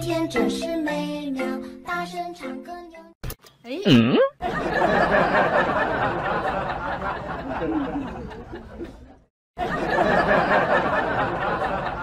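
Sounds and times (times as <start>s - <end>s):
people chattering and laughing: 4.6s - 12.0s.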